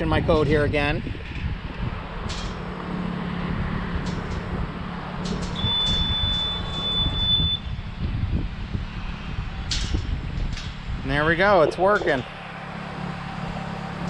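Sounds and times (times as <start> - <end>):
high beep: 5.6 - 7.7.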